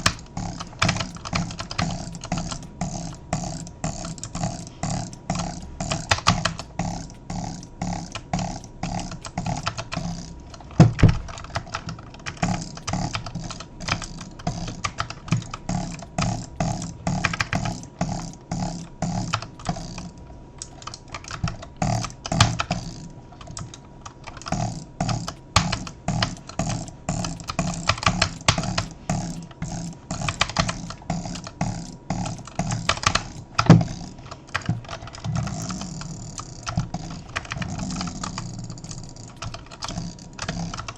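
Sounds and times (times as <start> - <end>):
faint steady hum: 0.0 - 40.9
rapid mechanical clicking: 0.0 - 40.9.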